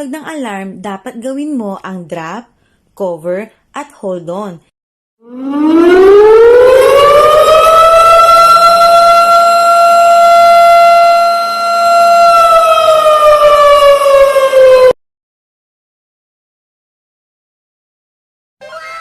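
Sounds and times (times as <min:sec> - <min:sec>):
wailing alarm siren: 0:05.2 - 0:15.0.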